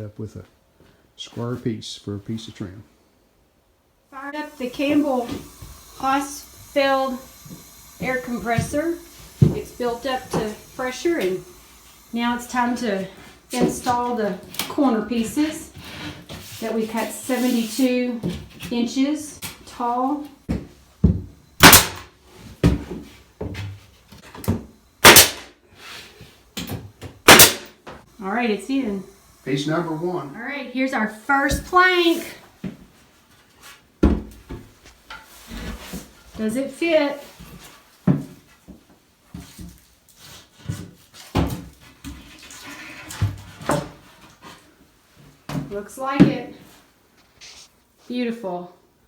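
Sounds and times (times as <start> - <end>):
nail gun firing: 21.6 - 22.1, 25.0 - 25.5, 27.2 - 27.8
wood scraping against wall: 42.2 - 44.8.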